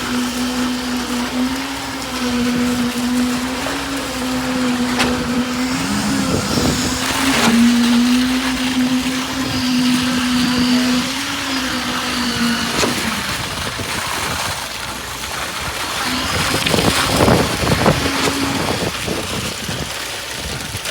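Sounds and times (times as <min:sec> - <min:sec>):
knocks of site work: 0:00.0 - 0:14.4
concrete vibrator motor whining: 0:00.0 - 0:20.7.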